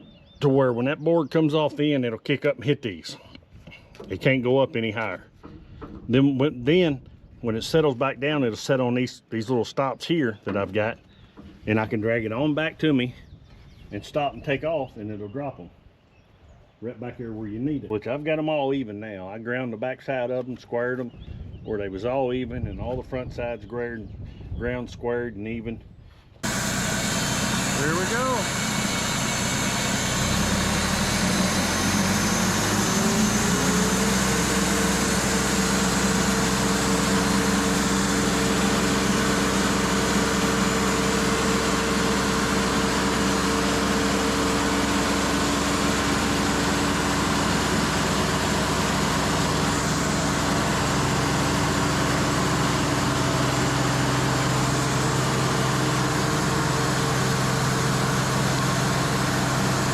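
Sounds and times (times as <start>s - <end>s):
sawmill engine running: 26.4s - 59.9s.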